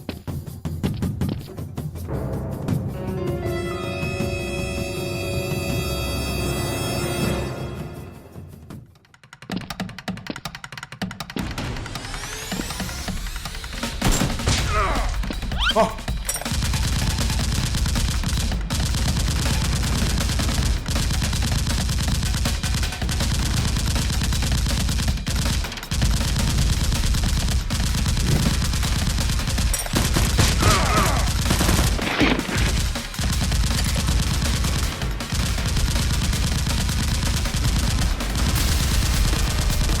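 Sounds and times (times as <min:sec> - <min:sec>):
rapid automatic gunfire: 0:11.4 - 0:40.0.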